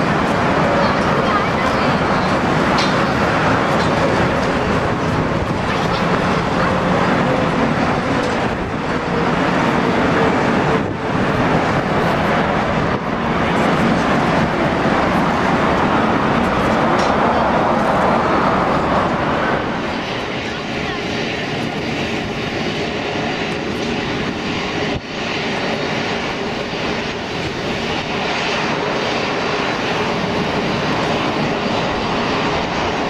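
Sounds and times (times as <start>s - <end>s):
jet engines roaring: 0.0s - 33.0s.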